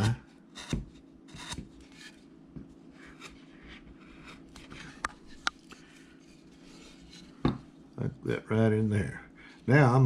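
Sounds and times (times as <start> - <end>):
gouge scraping wood: 0.0 - 2.3.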